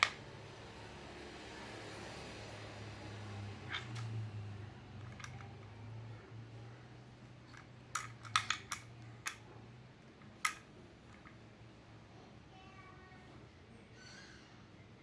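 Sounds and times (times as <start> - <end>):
hard objects clicking: 0.0 - 0.2, 3.6 - 4.3, 4.9 - 5.8, 7.4 - 9.5, 10.1 - 11.4.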